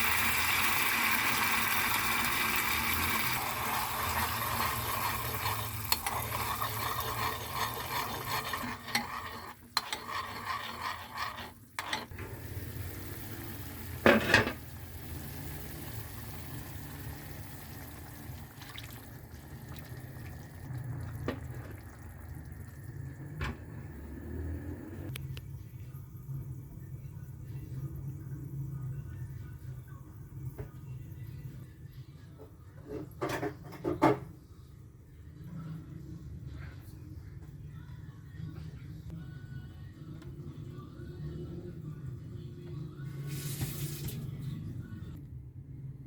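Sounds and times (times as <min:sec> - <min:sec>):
food sizzling in a frying pan: 0:00.0 - 0:07.2
utensil clinking and scraping: 0:03.7 - 0:12.2.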